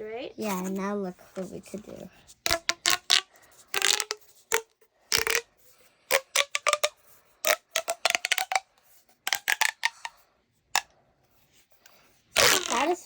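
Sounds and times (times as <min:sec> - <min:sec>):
plastic fidget toy clicks and pops: 0:02.5 - 0:05.5, 0:06.1 - 0:08.7, 0:09.3 - 0:10.2, 0:12.4 - 0:13.0.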